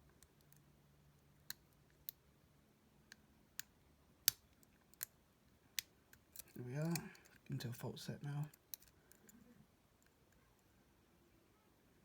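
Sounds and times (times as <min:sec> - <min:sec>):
lock pick clicking in lock: 0:08.5 - 0:09.4.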